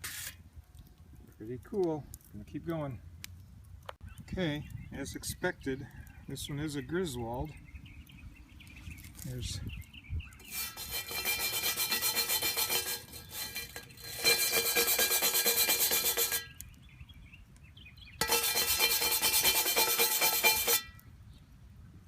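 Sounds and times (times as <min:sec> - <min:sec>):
scraping crud off cast iron skillet: 0:00.0 - 0:00.4, 0:10.4 - 0:16.6, 0:18.2 - 0:21.0.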